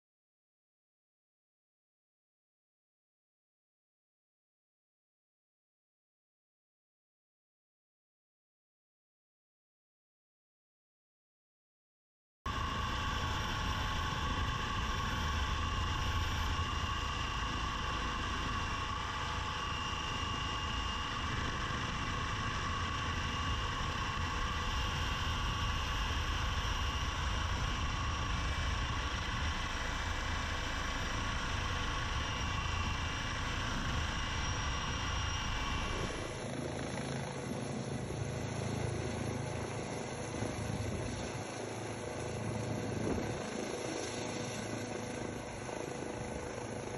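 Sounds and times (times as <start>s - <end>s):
helicopter rotor rumble: 12.5s - 46.9s
high turbine whine: 12.5s - 46.9s.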